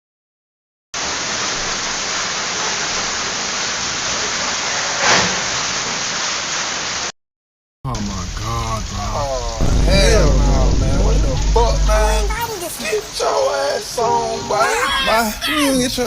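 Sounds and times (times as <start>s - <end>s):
heavy rain and hail: 1.0s - 7.1s, 7.9s - 16.0s.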